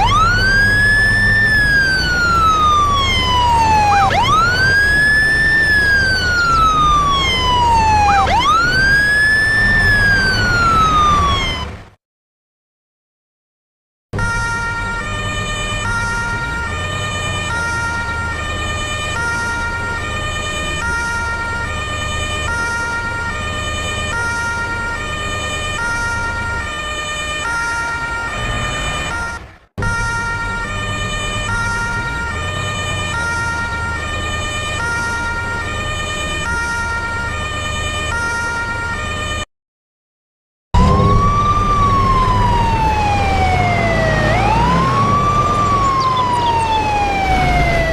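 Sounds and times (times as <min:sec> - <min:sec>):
siren-like horn wail: 0:00.0 - 0:11.8, 0:14.2 - 0:39.5, 0:40.8 - 0:47.9
truck musical horn: 0:14.2 - 0:18.3, 0:27.4 - 0:35.6.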